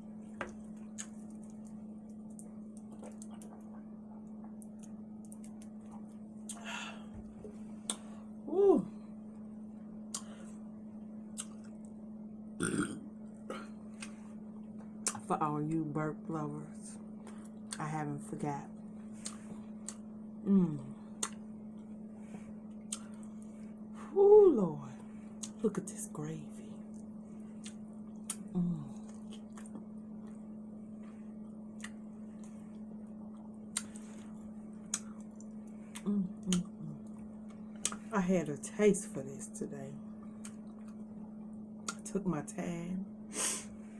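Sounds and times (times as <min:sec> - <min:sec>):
steady low hum: 0:00.0 - 0:43.9
person chewing: 0:11.3 - 0:11.9, 0:26.9 - 0:30.5, 0:31.7 - 0:36.8
wet mouth clicks and smacks: 0:11.3 - 0:11.9, 0:21.2 - 0:21.4
woman burping: 0:12.6 - 0:13.7
short vocal hums: 0:12.6 - 0:13.8, 0:20.4 - 0:21.3, 0:28.3 - 0:29.2, 0:35.9 - 0:37.0.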